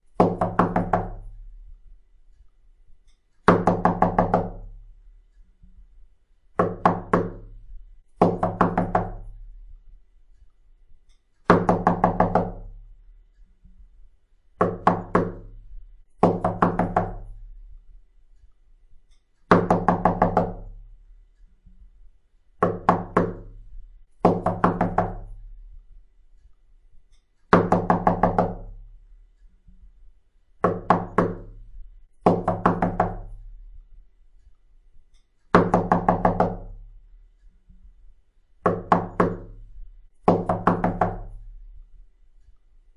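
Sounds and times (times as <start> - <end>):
knocking on a door: 0.2 - 1.3, 3.5 - 4.7, 6.6 - 7.5, 8.2 - 9.4, 11.5 - 12.8, 14.6 - 15.6, 16.2 - 17.3, 19.5 - 20.8, 22.6 - 23.6, 24.2 - 25.4, 27.5 - 28.8, 30.6 - 31.6, 32.2 - 33.4, 35.5 - 36.8, 38.6 - 39.6, 40.2 - 41.4.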